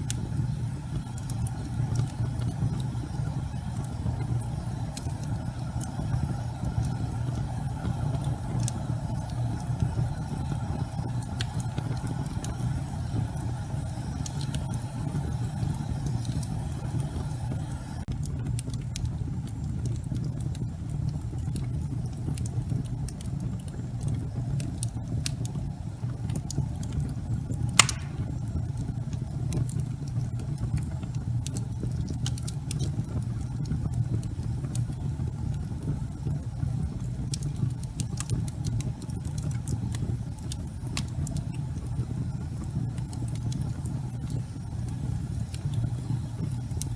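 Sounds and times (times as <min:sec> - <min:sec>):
fire crackling and popping: 0:00.0 - 0:46.9
logs burning in a fireplace: 0:00.0 - 0:46.9.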